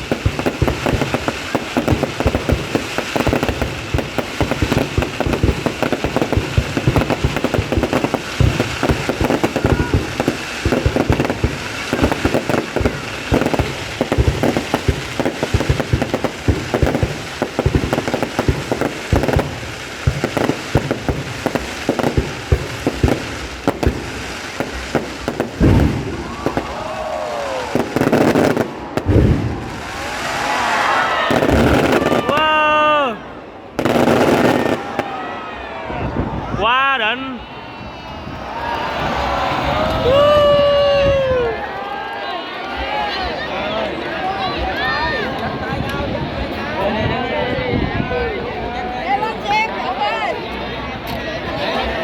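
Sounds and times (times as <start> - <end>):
fireworks booming: 0.0 - 35.4
fireworks crackling bangs: 0.0 - 36.7, 37.9 - 48.5.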